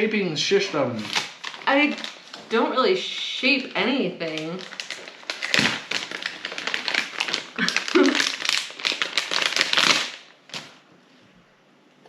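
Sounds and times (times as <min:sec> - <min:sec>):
plastic packaging crinkling: 0:00.9 - 0:03.3, 0:04.2 - 0:10.8.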